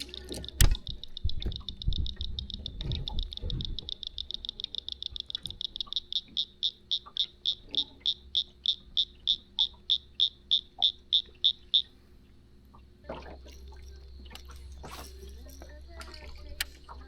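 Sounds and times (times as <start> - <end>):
low rumble: 0.0 - 5.9
frog peeping: 0.0 - 12.0.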